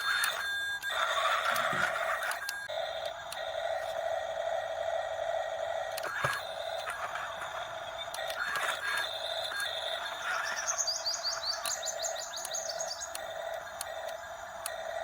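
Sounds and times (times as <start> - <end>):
sharp clicks: 0.0 - 3.5, 5.9 - 10.0, 11.2 - 15.0
small bird trilling: 6.1 - 13.2.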